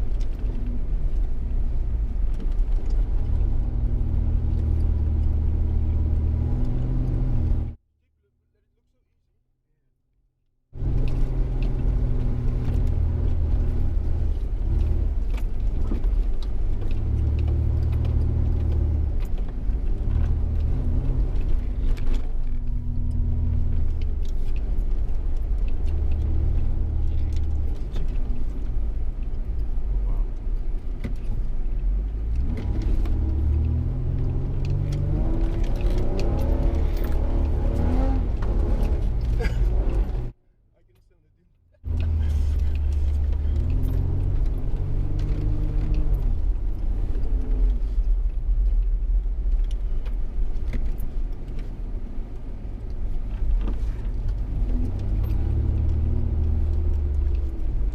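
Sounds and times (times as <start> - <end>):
off-road vehicle engine under load: 0.0 - 7.8, 10.7 - 57.9
heavy low rumble: 18.4 - 51.2.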